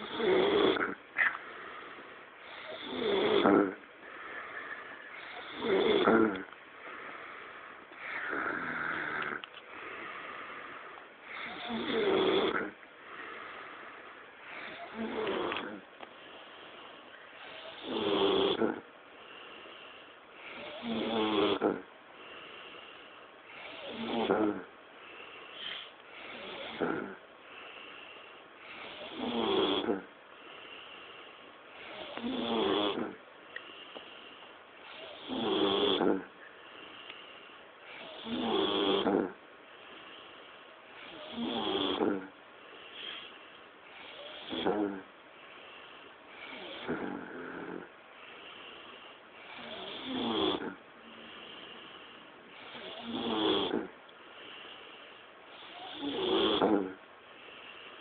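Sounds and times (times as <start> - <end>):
man snoring: 0.0 - 1.0, 2.4 - 3.8, 5.2 - 6.5, 8.0 - 10.0, 11.2 - 13.4, 14.5 - 15.8, 17.4 - 18.8, 20.5 - 21.9, 23.6 - 24.7, 26.2 - 27.2, 28.6 - 30.1, 31.8 - 33.2, 34.9 - 36.3, 37.9 - 39.4, 41.0 - 42.4, 44.0 - 45.1, 46.4 - 47.9, 49.4 - 51.8, 52.6 - 54.0, 55.6 - 57.0
quiet breathing: 0.0 - 58.0.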